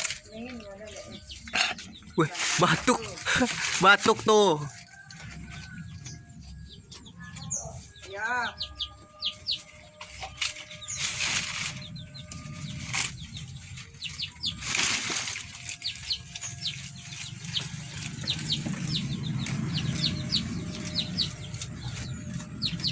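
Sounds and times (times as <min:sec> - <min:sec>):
small birds chirping: 0:00.0 - 0:22.9
goat coughing: 0:01.5 - 0:02.0.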